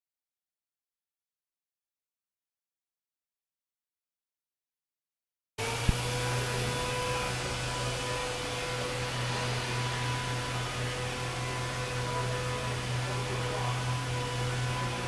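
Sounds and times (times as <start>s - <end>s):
machine hum with whine: 5.6s - 15.0s.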